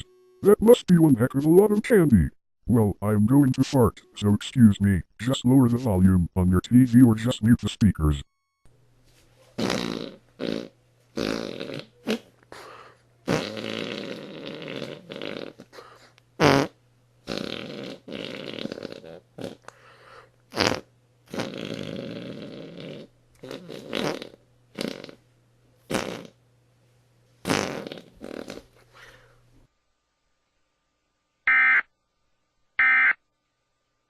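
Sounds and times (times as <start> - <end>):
steady low hum: 0.0 - 8.2
fart sounds: 9.6 - 12.4, 13.2 - 15.8, 16.4 - 19.7, 20.5 - 25.2, 25.9 - 26.4, 27.4 - 28.9.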